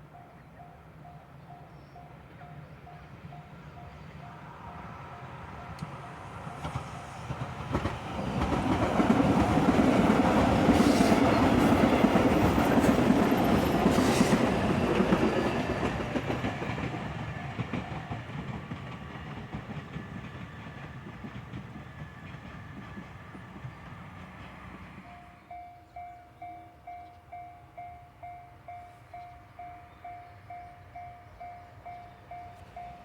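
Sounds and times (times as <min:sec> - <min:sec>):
train wheels clattering over rail joints: 0:06.6 - 0:25.0
level crossing warning bell: 0:25.1 - 0:33.0.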